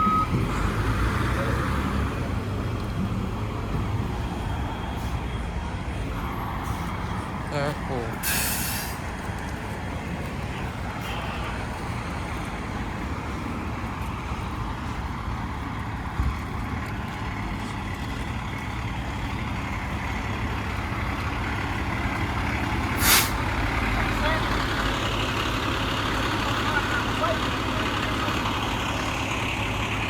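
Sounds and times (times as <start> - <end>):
diesel engine idling: 0.0 - 30.0
sharp burst of hiss: 8.2 - 9.0, 23.0 - 23.4.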